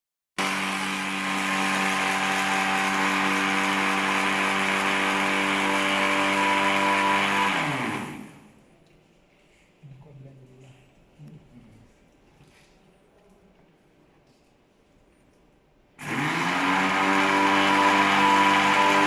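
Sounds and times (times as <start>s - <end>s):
electric blender motor whining: 0.4s - 8.5s, 16.0s - 19.0s.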